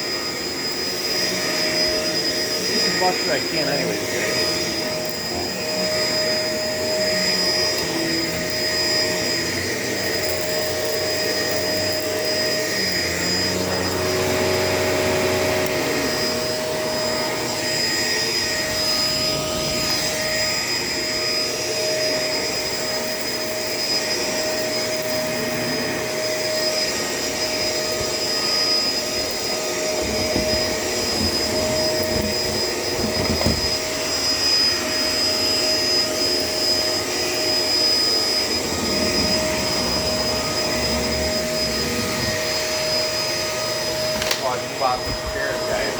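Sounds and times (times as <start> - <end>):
vacuum cleaner motor whine: 0.0 - 45.9.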